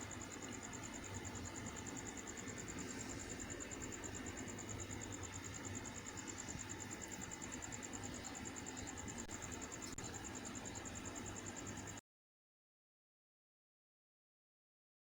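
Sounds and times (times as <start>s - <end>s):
cricket chirping: 0.0s - 12.0s
faint low background hum: 0.0s - 12.0s.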